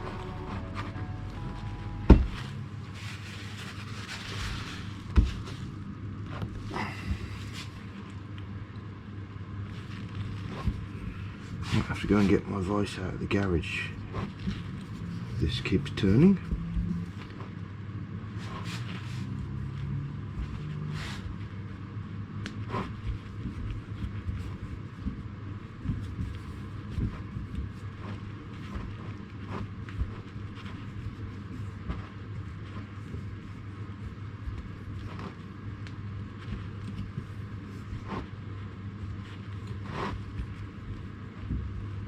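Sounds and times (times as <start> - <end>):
handling scrape: 0.0 - 7.8, 25.8 - 42.0
workshop heater rumble: 0.0 - 42.0.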